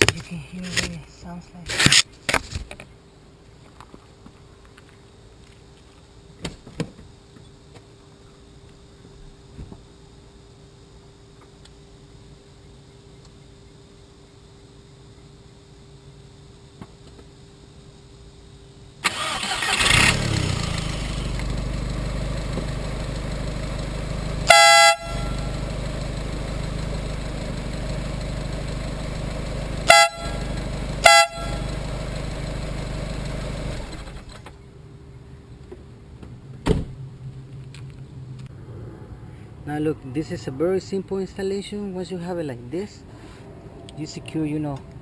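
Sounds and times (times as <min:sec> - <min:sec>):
engine starting and running: 0:19.0 - 0:34.6
air horn blasts: 0:24.4 - 0:25.6, 0:29.8 - 0:31.8.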